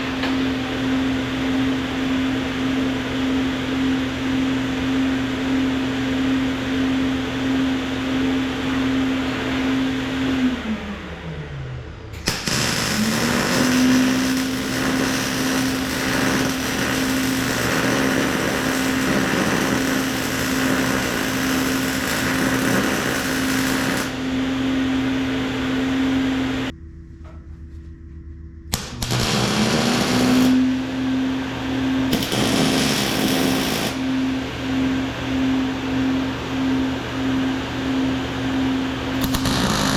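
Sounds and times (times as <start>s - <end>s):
extractor fan humming: 12.1s - 39.2s
welding arc: 12.2s - 24.3s, 28.7s - 30.9s, 32.1s - 34.1s, 39.2s - 39.9s.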